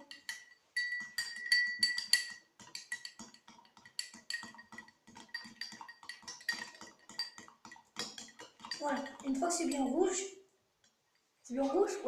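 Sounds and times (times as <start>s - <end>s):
spoon clinking against glass: 0.0s - 9.9s.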